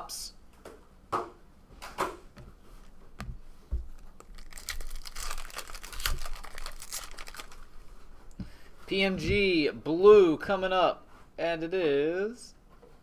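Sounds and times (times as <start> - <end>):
wrapper tearing and crinkling: 3.9 - 7.7.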